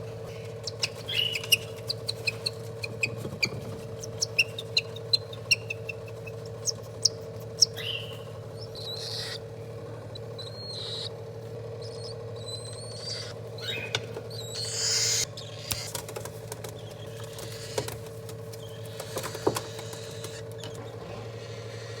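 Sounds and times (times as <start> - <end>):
steady background hum: 0.0 - 22.0
parrot squawking: 4.0 - 9.4, 10.2 - 11.1, 11.8 - 15.9, 17.0 - 18.0
parrot chirping and whistling: 10.4 - 11.1, 11.8 - 15.9
sharp clicks: 15.6 - 20.5.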